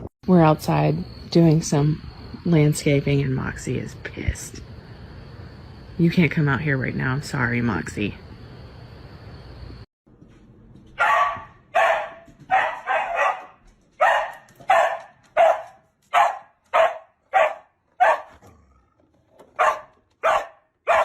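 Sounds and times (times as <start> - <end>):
dog barking: 11.0 - 18.7, 19.5 - 21.0.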